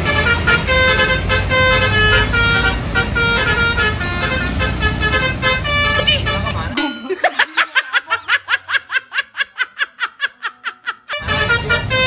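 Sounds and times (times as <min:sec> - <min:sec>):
music with horn tones: 0:00.0 - 0:06.8, 0:11.1 - 0:12.0
high-pitched giggle: 0:06.8 - 0:11.1.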